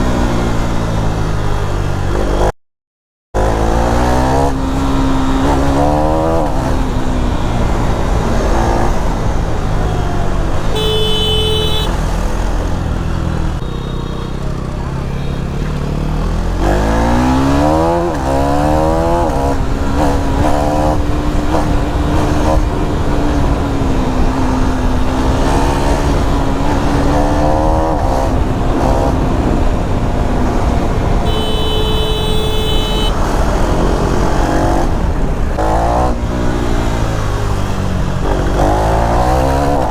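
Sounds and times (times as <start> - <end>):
motorcycle engine revving: 3.4 - 39.9
horn toots: 9.9 - 12.2, 31.2 - 33.4.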